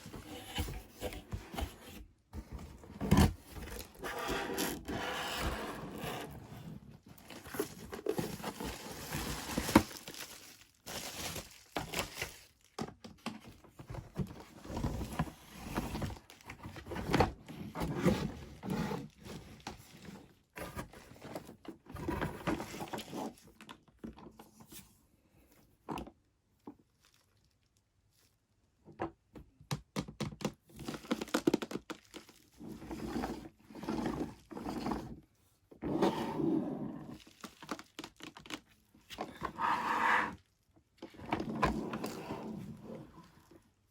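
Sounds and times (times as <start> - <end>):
packaging crinkling: 7.2 - 12.8.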